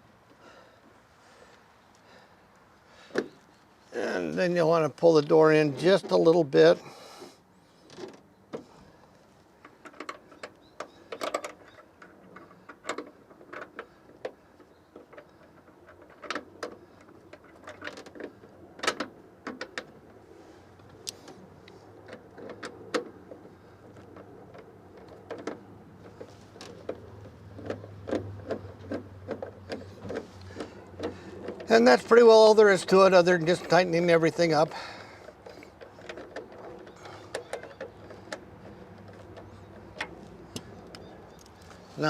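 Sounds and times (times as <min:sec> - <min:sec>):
light clicks and knocks: 0:20.8 - 0:42.0.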